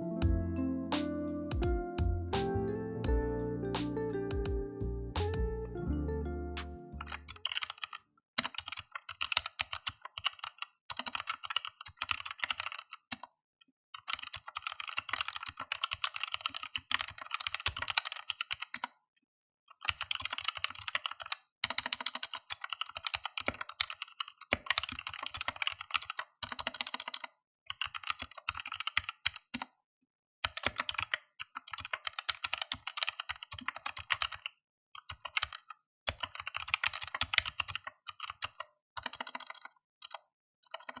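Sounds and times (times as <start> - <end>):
mechanical keyboard typing: 7.0 - 13.3, 14.0 - 18.9, 19.8 - 29.7, 30.5 - 41.0.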